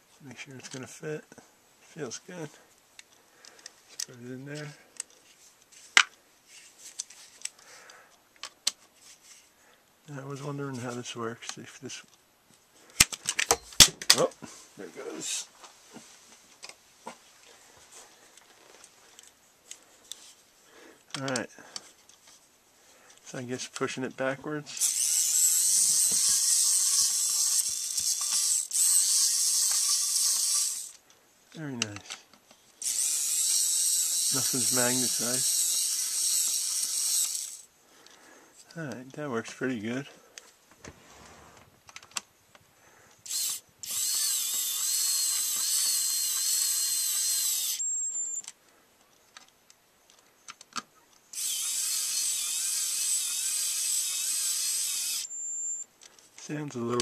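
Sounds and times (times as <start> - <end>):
cordless screwdriver whirring: 24.8 - 31.0, 32.8 - 37.7, 43.3 - 48.5, 51.3 - 55.8.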